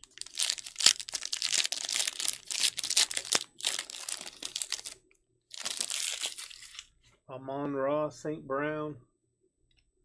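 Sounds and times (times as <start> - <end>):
foil wrapper crinkling and tearing: 0.0 - 6.9.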